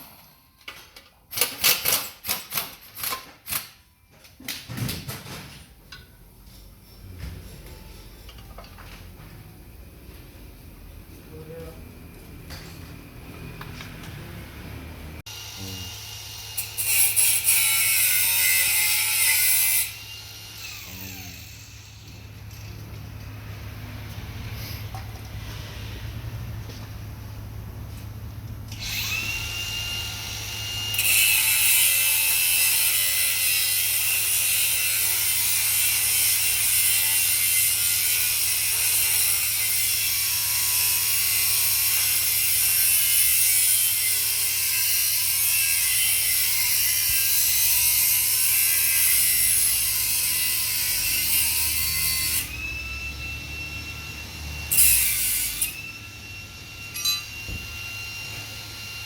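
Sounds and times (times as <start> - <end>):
power tool whining and rattling: 12.6 - 22.8, 28.7 - 59.0.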